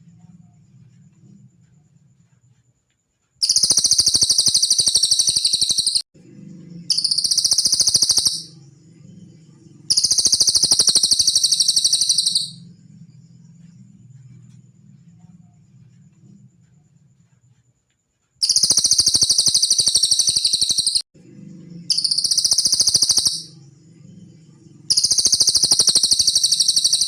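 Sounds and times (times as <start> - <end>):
faint low hum: 0.0 - 3.4, 6.2 - 18.4, 21.2 - 27.0
bird rattling trills: 3.4 - 6.0, 6.9 - 8.5, 9.9 - 12.6, 18.4 - 21.0, 21.9 - 23.6, 24.9 - 27.0.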